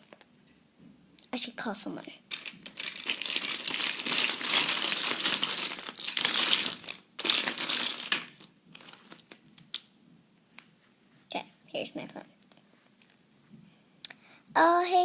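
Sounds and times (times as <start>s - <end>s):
crinkly material rustling: 0.0s - 0.3s, 2.3s - 9.9s.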